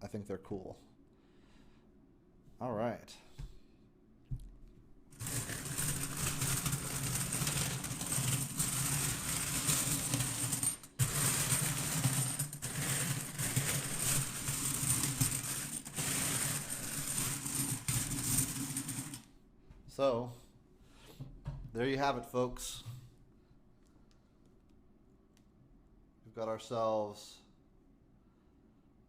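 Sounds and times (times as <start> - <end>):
coins clattering: 5.1 - 19.2.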